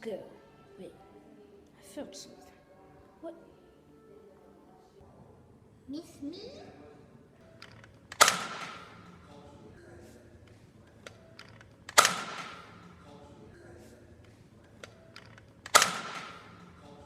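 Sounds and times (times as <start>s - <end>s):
toy blaster shot crack: 8.1s - 8.9s, 11.9s - 12.6s, 15.7s - 16.4s.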